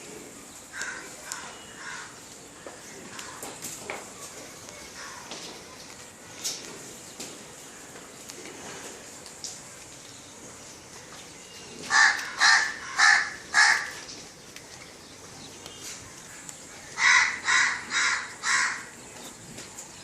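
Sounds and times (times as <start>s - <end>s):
bird giving harsh calls: 11.9s - 14.1s, 17.0s - 19.0s.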